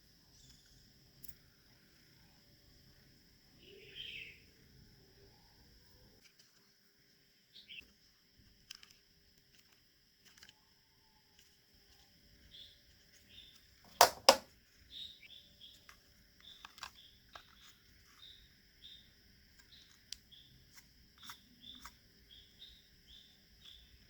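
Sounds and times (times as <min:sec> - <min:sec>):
faint high chirping: 0:03.5 - 0:06.2
small ticks: 0:08.6 - 0:13.7, 0:15.7 - 0:24.0
sharp clicks: 0:13.9 - 0:14.4.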